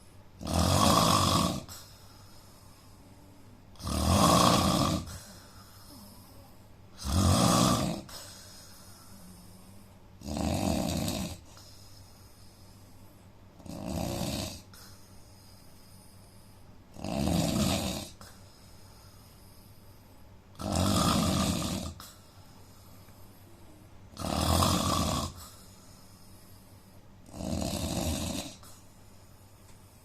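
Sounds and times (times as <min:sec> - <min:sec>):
quiet breathing: 0:00.0 - 0:00.4, 0:01.4 - 0:03.8, 0:04.4 - 0:07.1, 0:07.9 - 0:10.2, 0:11.3 - 0:13.6, 0:14.6 - 0:17.0, 0:18.0 - 0:20.6, 0:21.7 - 0:24.2, 0:25.2 - 0:27.3, 0:28.4 - 0:30.0
man snoring: 0:00.4 - 0:01.8, 0:03.8 - 0:06.1, 0:07.0 - 0:11.8, 0:13.6 - 0:14.9, 0:16.9 - 0:18.4, 0:20.5 - 0:22.2, 0:24.1 - 0:25.8, 0:27.2 - 0:28.8.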